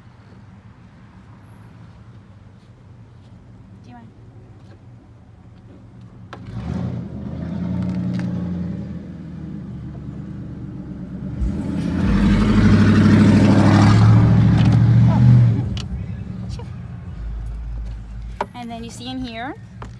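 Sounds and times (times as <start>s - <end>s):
car engine driving past: 6.4s - 19.9s.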